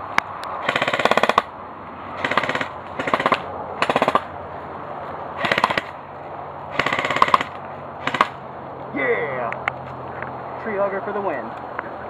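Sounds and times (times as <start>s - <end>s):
airsoft gun full-auto bursts: 0.6s - 1.5s, 2.2s - 4.3s, 5.4s - 6.0s, 6.7s - 8.4s.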